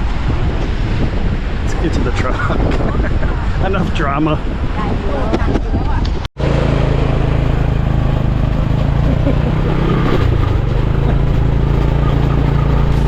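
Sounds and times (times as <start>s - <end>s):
vehicle engine running: 6.4s - 13.0s.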